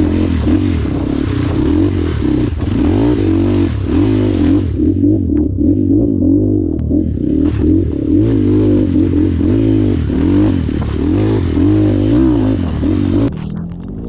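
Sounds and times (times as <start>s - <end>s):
motorcycle engine revving: 0.0s - 14.0s.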